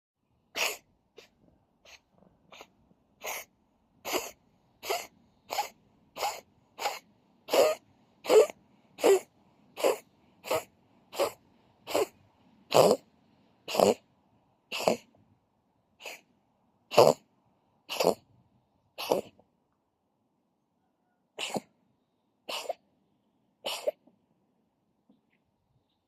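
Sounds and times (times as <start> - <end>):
cat coughing: 0.5 - 13.0, 13.7 - 14.0, 14.7 - 15.1, 16.0 - 16.2, 16.9 - 17.2, 17.9 - 18.2, 19.0 - 19.4, 21.4 - 21.7, 22.5 - 22.9, 23.6 - 24.1.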